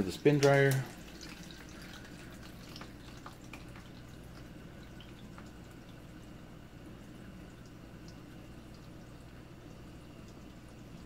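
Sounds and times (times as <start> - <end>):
tap water running into tub: 0.0 - 11.0
water drips and splashes: 0.0 - 11.0.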